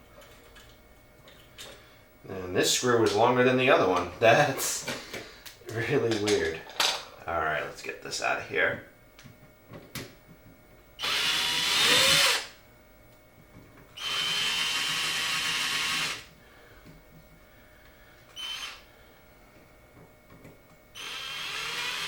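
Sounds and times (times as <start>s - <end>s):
power driver spinning screws: 11.0s - 12.5s, 21.0s - 22.0s.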